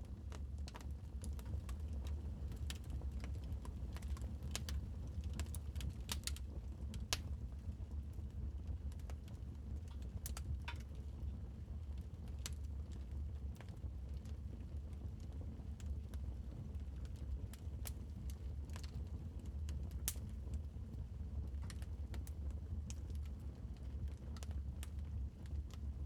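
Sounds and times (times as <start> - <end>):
low fire rumble: 0.0 - 26.0
wood fire crackling: 0.2 - 8.1, 17.0 - 20.7.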